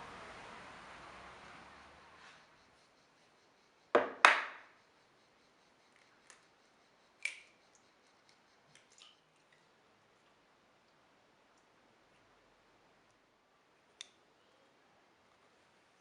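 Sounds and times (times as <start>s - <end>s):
sharp knocks: 4.0s - 4.6s.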